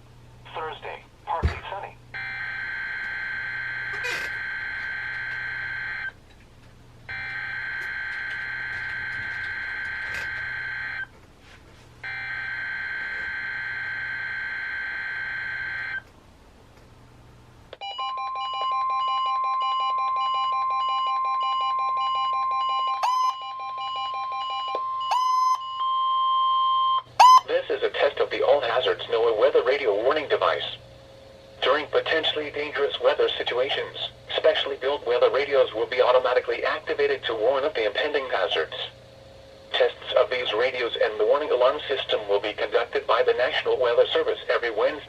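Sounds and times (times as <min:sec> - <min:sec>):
steady warning alarm tone: 0:02.1 - 0:06.2, 0:07.1 - 0:11.1, 0:12.0 - 0:16.0, 0:17.8 - 0:34.2.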